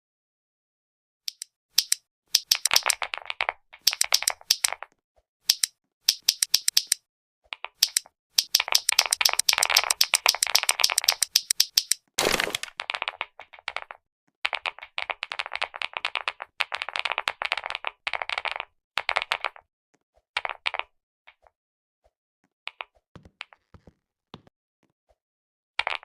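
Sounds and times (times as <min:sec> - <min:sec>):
clicky keyboard typing: 0:01.3 - 0:04.9, 0:05.5 - 0:19.6.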